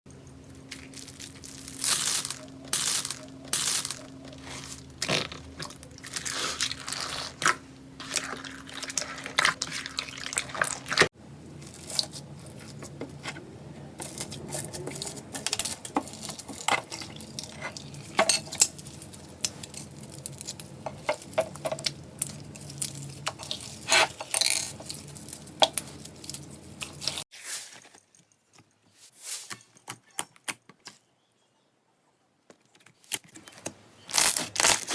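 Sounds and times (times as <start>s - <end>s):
faint steady hum: 0.1s - 27.3s
slime crackling and popping: 0.6s - 12.6s.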